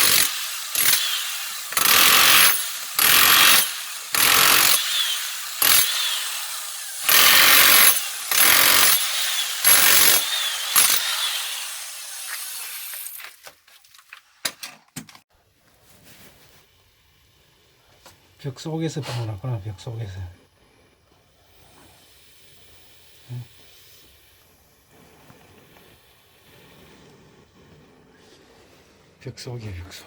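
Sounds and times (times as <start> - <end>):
electric chipping hammer: 0.0 - 13.2.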